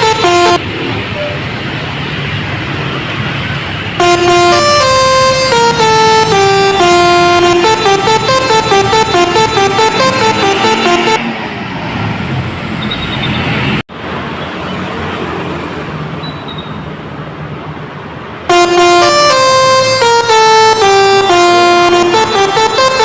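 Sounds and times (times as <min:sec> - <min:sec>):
bus multi-tone air horn tune: 0:00.0 - 0:01.4, 0:04.0 - 0:11.3, 0:18.5 - 0:23.0
road traffic noise: 0:00.0 - 0:23.0.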